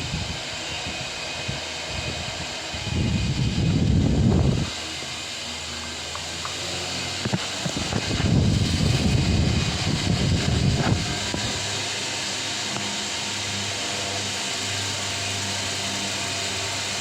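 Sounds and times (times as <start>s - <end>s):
air blowing on microphone: 0.0s - 5.4s, 7.1s - 12.5s
fan motor hum: 0.0s - 17.0s.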